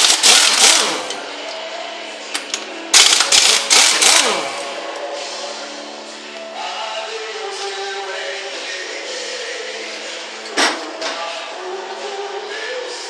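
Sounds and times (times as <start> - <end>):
impact wrench rattling: 0.0 - 1.2, 2.3 - 4.7.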